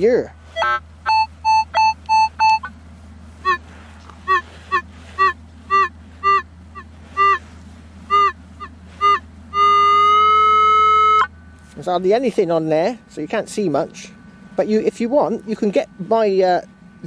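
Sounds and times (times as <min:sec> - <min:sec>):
metal detector beeps: 0:00.6 - 0:02.8, 0:03.4 - 0:03.6, 0:04.2 - 0:07.5, 0:08.1 - 0:11.8
metal detector long tone: 0:00.6 - 0:02.8, 0:03.4 - 0:17.0.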